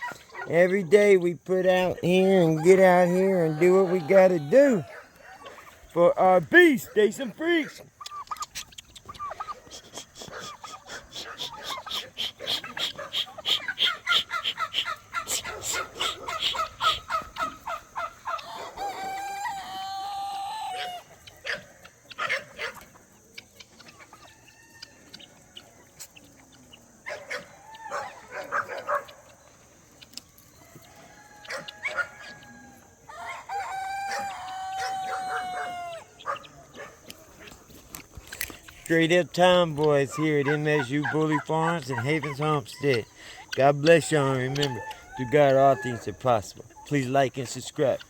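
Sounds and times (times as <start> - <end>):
chickens clucking: 0.0 - 48.0
rooster crowing: 2.5 - 5.6, 18.3 - 21.1, 27.6 - 28.4, 30.5 - 36.4, 44.2 - 46.2.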